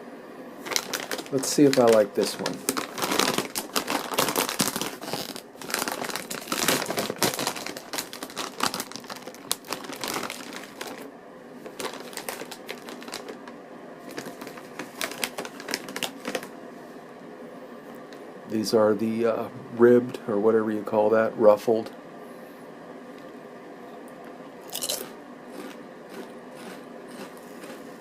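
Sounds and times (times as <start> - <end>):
chip bag crinkling: 0.6 - 16.6, 24.7 - 28.0.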